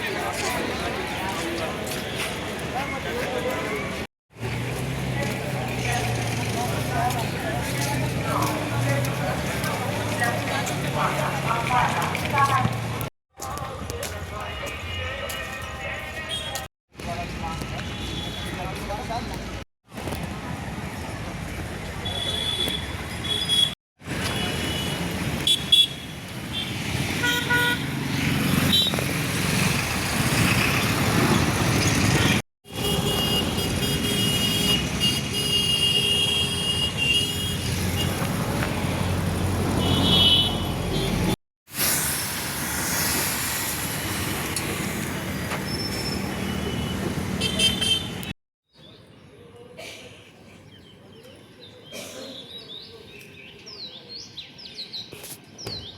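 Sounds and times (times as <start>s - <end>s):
steady traffic roar: 0.0s - 48.4s
vehicle horns honking: 22.0s - 27.9s, 32.7s - 38.3s, 39.8s - 41.4s, 46.0s - 48.3s.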